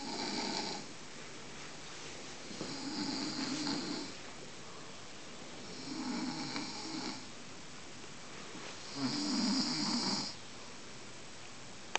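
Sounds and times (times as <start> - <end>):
man snoring: 0.0 - 0.9, 2.6 - 4.2, 5.7 - 7.3, 8.9 - 10.4.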